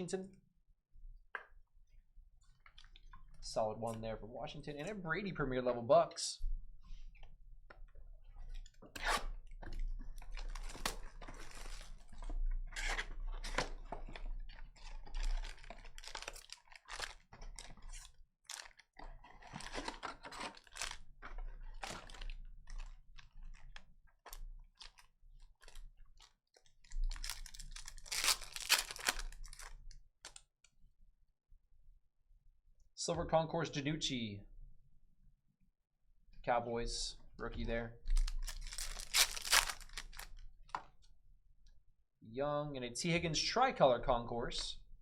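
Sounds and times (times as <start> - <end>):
trading cards rustling and clicking: 26.6 - 30.4, 38.1 - 40.9.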